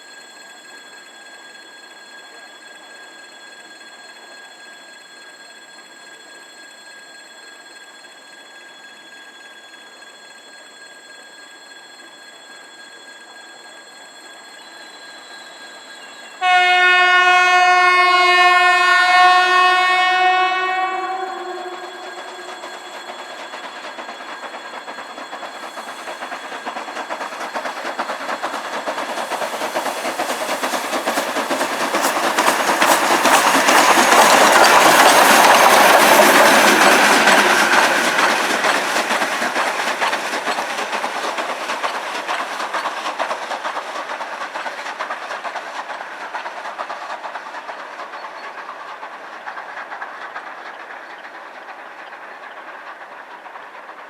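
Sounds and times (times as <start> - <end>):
steam hiss: 0.0 - 54.0
wheel clatter on rails: 22.0 - 54.0.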